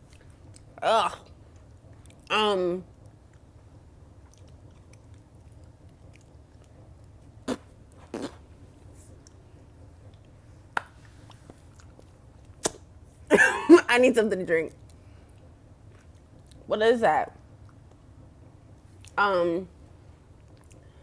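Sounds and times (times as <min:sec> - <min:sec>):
person chewing: 0:04.2 - 0:08.4
mouth sounds: 0:07.4 - 0:08.5.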